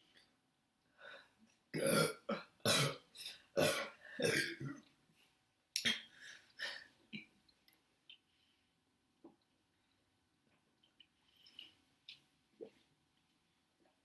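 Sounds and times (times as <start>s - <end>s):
woman burping: 1.8s - 3.0s, 3.6s - 4.8s.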